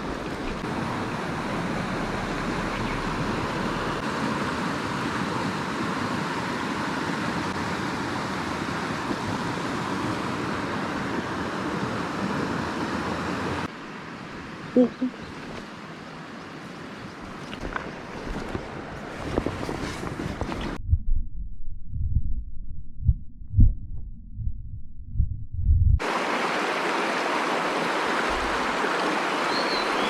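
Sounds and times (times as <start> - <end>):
stream rushing over rocks: 0.0 - 14.1, 26.0 - 30.0.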